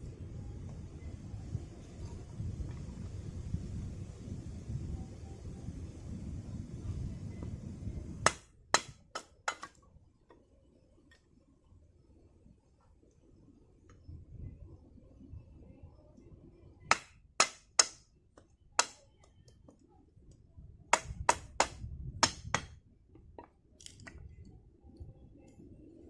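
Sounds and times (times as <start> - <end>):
faint low rumble: 0.0 - 8.3, 9.8 - 16.9.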